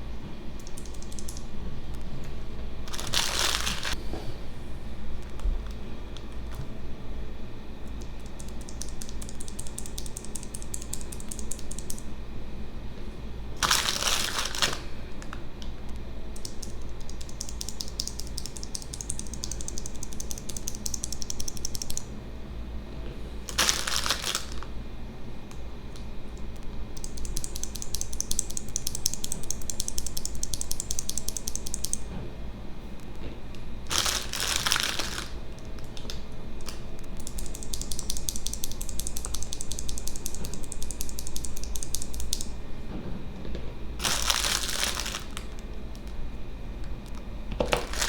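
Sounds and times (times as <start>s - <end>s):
mechanical keyboard key clicks: 35.8s - 42.5s.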